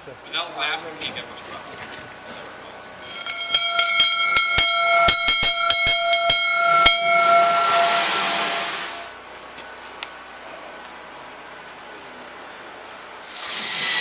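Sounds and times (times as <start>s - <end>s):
metal bell rung rapidly: 3.0s - 8.0s
rushing hiss: 7.4s - 9.2s, 13.2s - 14.0s.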